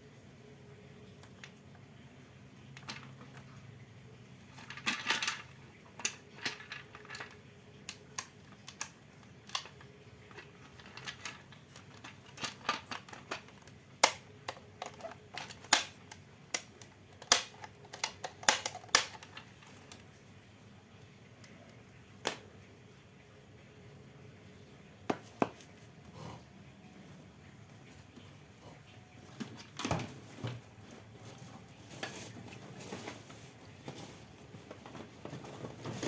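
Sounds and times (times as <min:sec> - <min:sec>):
clicks and knocks of small parts: 0:02.8 - 0:03.5, 0:04.5 - 0:20.1.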